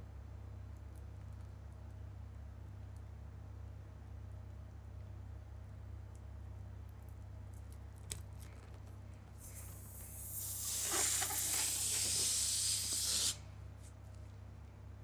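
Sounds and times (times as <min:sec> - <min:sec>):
hiss of rushing air: 0:09.4 - 0:13.4.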